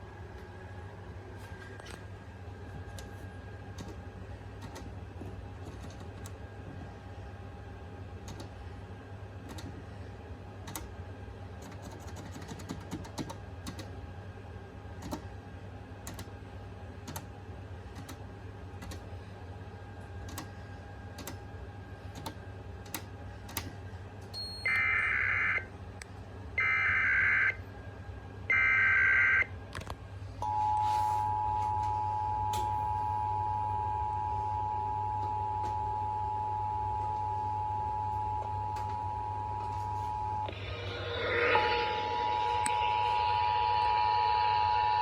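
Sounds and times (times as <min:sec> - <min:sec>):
low hum: 0:29.4 - 0:45.0.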